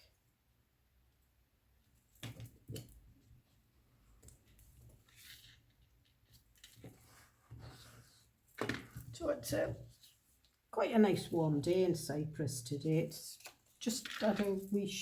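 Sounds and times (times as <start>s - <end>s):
soft paper rustle: 2.0s - 10.7s.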